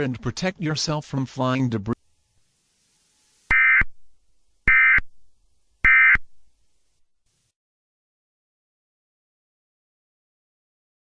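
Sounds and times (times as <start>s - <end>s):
buzzing digital data tones: 2.0s - 7.0s.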